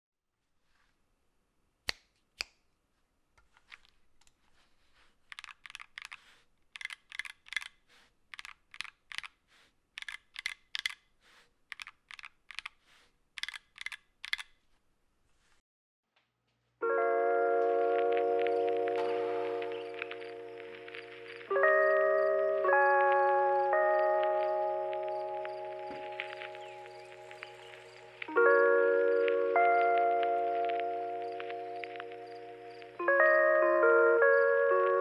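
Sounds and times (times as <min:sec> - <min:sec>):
mechanical keyboard typing: 0:05.2 - 0:14.6
sharper key clicks: 0:05.3 - 0:09.4, 0:13.4 - 0:14.6.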